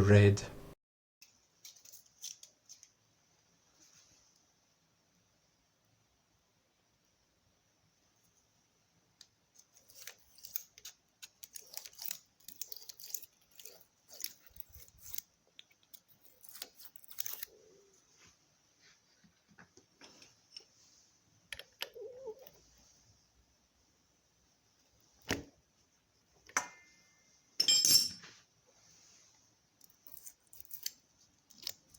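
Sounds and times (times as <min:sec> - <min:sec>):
small clicks and snips: 0:09.2 - 0:17.5, 0:29.8 - 0:31.9.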